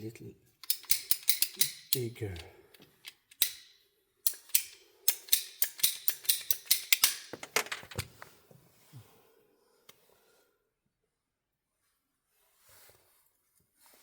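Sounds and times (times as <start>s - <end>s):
hand tool sharp clicks and snaps: 0.6s - 7.3s.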